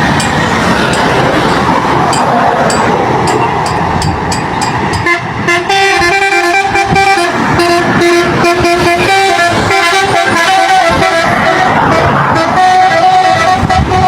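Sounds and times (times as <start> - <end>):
road and engine noise: 0.0 - 14.0
musical truck horn tune: 5.0 - 14.0.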